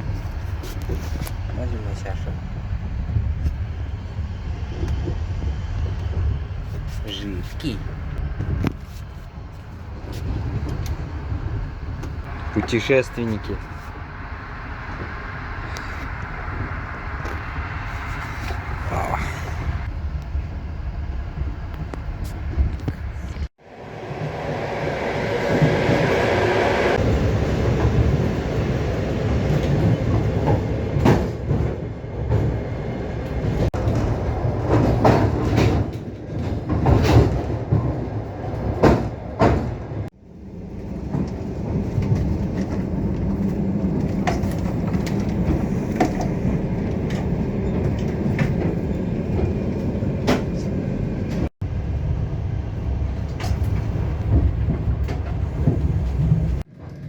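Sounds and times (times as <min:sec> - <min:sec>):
train rumbling: 0:00.0 - 0:57.0
wheel clacks over rail joints: 0:27.0 - 0:51.5, 0:53.0 - 0:57.0.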